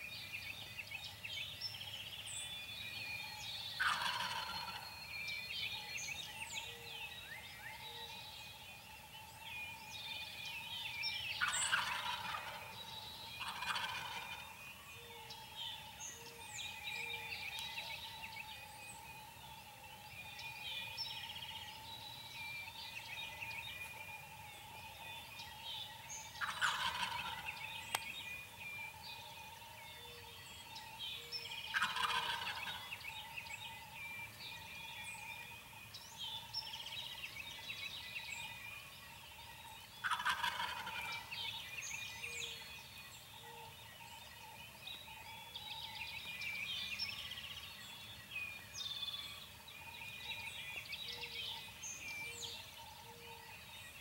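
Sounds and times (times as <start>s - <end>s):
small birds chirping: 0.0s - 54.0s
turkey gobbling: 3.8s - 4.8s, 11.4s - 12.8s, 13.4s - 14.4s, 26.4s - 27.6s, 31.7s - 32.8s, 40.0s - 41.3s.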